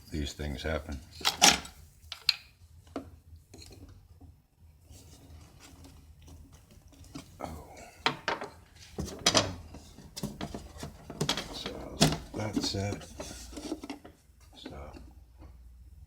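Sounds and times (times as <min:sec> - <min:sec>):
quiet rubbing: 0:08.7 - 0:15.6.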